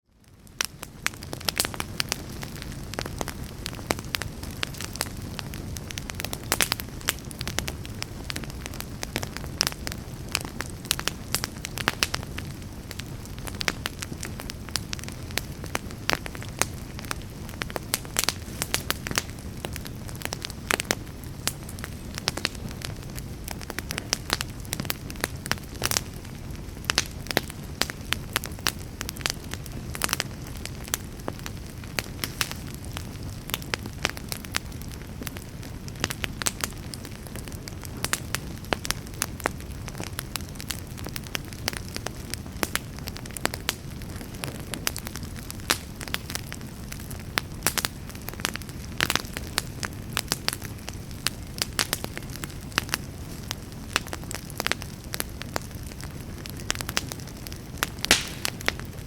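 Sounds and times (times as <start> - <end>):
wood fire crackling: 0.1 - 59.0.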